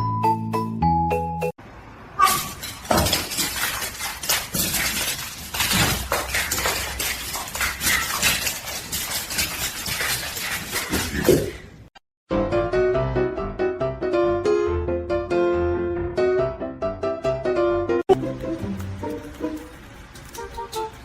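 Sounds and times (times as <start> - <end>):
hard objects clattering and clinking: 2.4 - 11.6.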